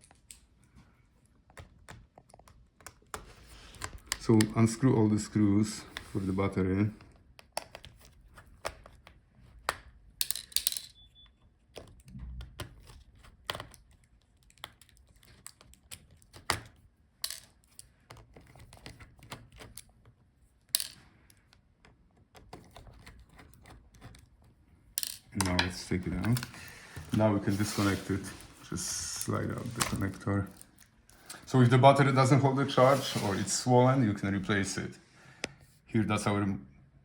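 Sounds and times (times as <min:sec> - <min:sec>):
brief scrapes: 0:32.8 - 0:33.6.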